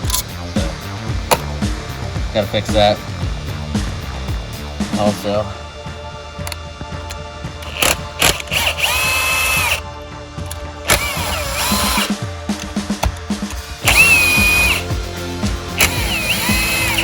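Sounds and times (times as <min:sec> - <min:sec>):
power drill spinning: 0:06.4 - 0:14.9, 0:15.7 - 0:17.0.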